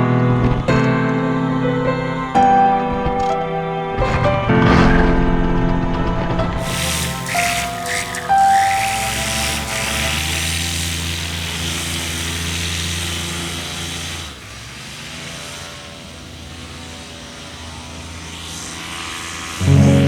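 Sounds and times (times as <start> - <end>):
paramotor engine and propeller: 6.6 - 20.0.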